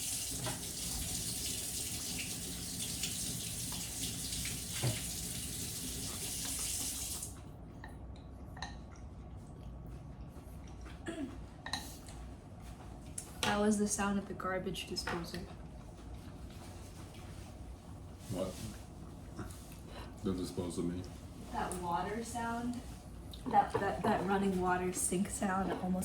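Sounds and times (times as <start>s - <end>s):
tap running water: 0.0s - 7.4s, 23.4s - 26.0s.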